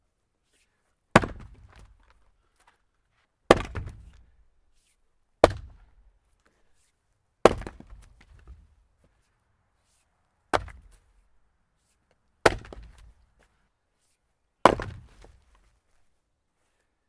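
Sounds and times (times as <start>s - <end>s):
axe chopping wood: 1.2s - 1.9s, 3.5s - 4.2s, 5.4s - 6.0s, 7.4s - 8.6s, 10.5s - 11.1s, 12.4s - 13.2s, 14.6s - 15.5s.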